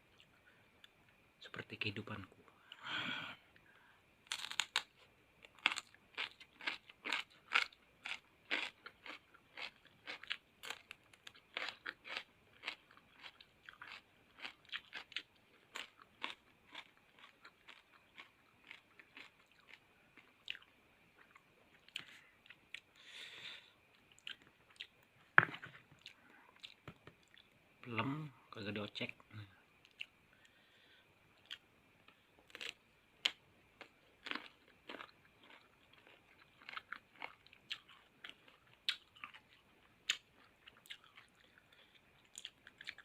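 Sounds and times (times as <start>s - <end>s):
person chewing crunchy fruit: 4.3s - 23.0s, 23.9s - 25.0s, 26.0s - 27.5s, 32.5s - 43.0s.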